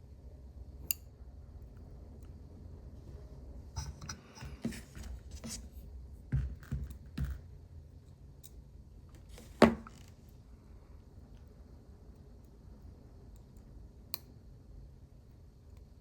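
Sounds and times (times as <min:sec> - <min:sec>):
soft bumps: 0:03.8 - 0:07.5.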